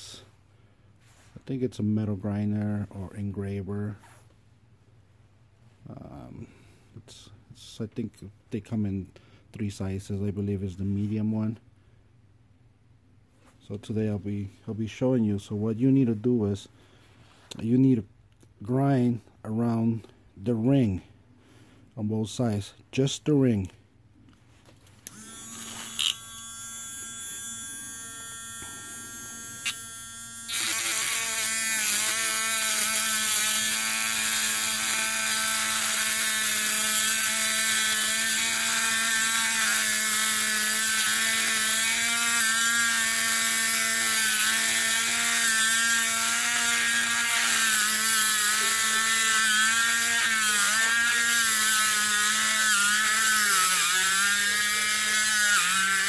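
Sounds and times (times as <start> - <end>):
rotary grinder whining: 25.1 - 56.0.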